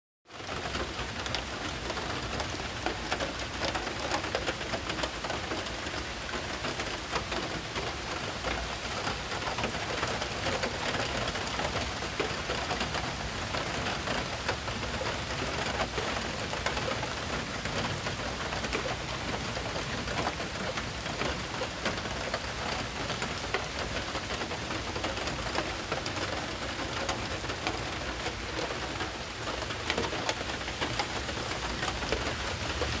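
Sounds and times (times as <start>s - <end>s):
heavy rain and hail striking surfaces: 0.3s - 33.0s.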